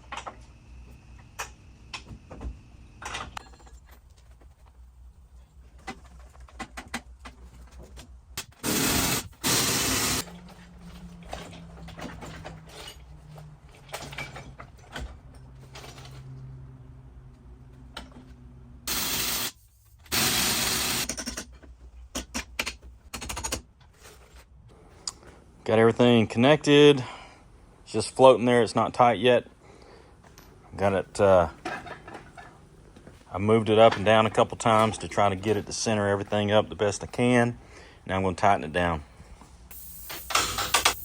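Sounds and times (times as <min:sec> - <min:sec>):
loud hissing bursts: 0:08.6 - 0:10.2, 0:18.9 - 0:21.0, 0:39.7 - 0:41.0
tools clicking and clanking: 0:10.2 - 0:16.4, 0:39.7 - 0:41.0.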